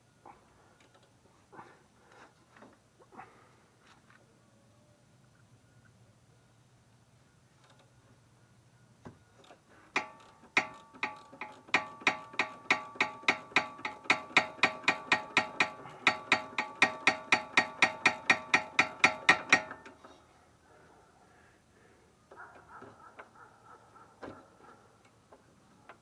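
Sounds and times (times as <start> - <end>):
ratchet wrench clicking: 10.0 - 20.0.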